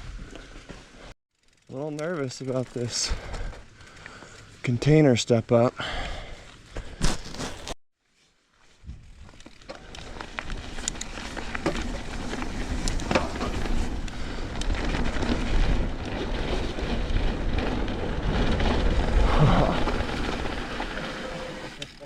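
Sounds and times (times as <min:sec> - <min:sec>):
bike tyre noise: 0:00.0 - 0:07.8, 0:08.8 - 0:22.0
bike clicks and rattles: 0:01.3 - 0:04.6, 0:08.9 - 0:22.0.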